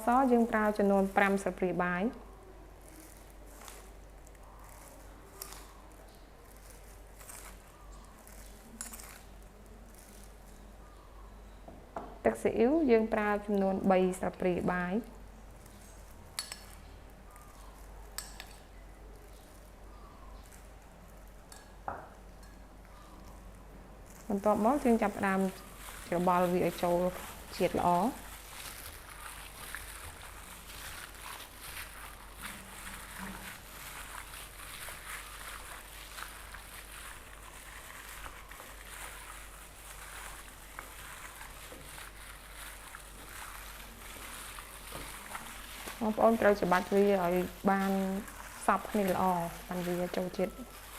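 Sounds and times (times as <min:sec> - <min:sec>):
wet squelching of kneaded meat: 0:00.0 - 0:11.6, 0:22.2 - 0:50.9.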